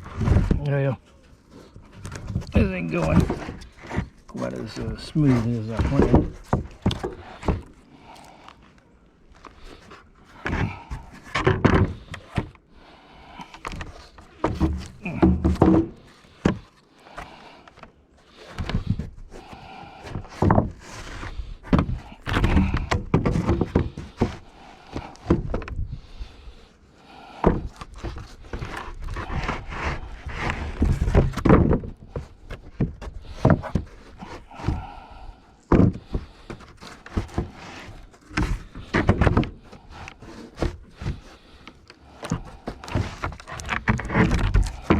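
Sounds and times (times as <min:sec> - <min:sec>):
wooden boards thunking: 0:02.1 - 0:07.8, 0:10.4 - 0:12.5, 0:13.6 - 0:16.7, 0:18.5 - 0:25.8, 0:27.4 - 0:41.5, 0:42.2 - 0:44.9.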